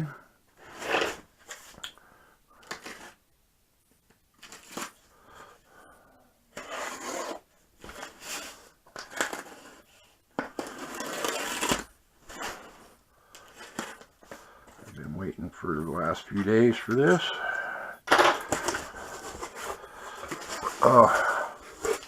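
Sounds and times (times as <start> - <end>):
blade scraping tape and cardboard: 6.6 - 7.4, 10.6 - 12.7.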